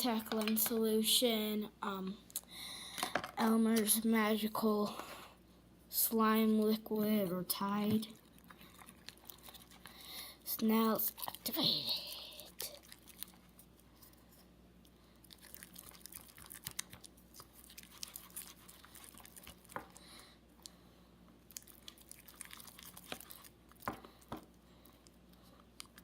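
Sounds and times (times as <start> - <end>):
sticky clicks of slime stirred: 15.4 - 20.0, 21.5 - 26.0.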